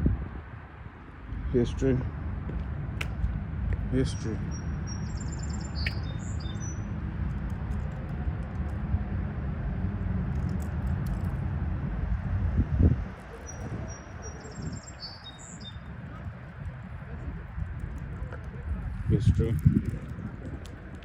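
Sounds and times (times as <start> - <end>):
steady low rumble: 0.0 - 21.0
songbirds chirping: 1.3 - 8.8, 12.2 - 21.0.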